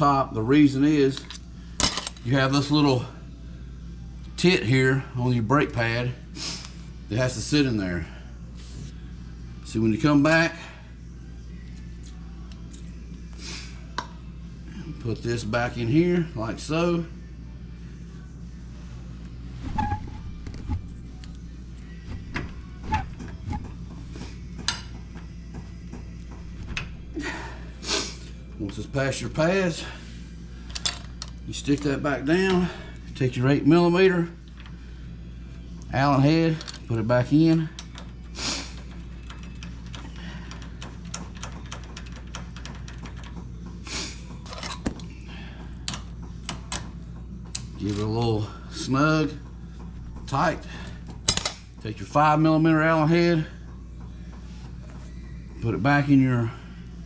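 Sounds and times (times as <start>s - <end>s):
steady low hum: 0.0s - 57.0s
metal parts clicking and knocking: 51.2s - 51.6s.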